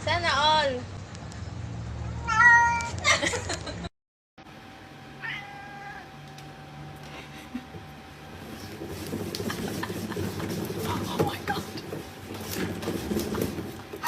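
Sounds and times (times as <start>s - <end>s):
cat meowing: 2.1s - 3.0s, 5.2s - 6.1s.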